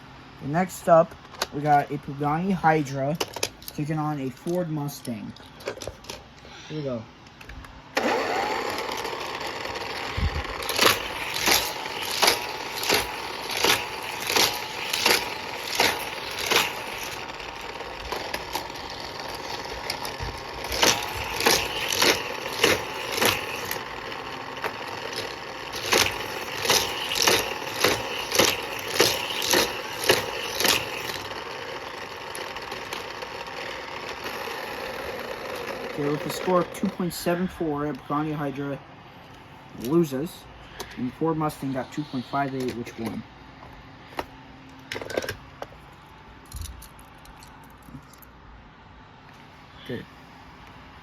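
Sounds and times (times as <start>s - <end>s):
electric motor whirring: 7.9s - 38.0s, 40.7s - 44.3s.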